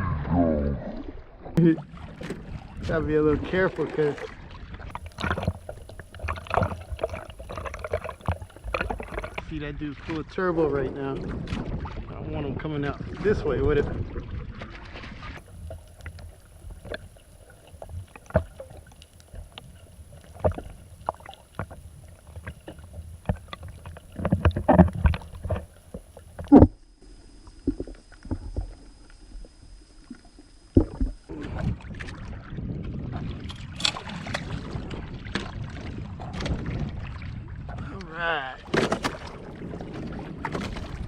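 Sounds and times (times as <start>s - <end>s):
faint high whine: 15.4s - 31.4s
knocks and bumps on kayak: 20.2s - 26.8s, 38.6s - 41.0s.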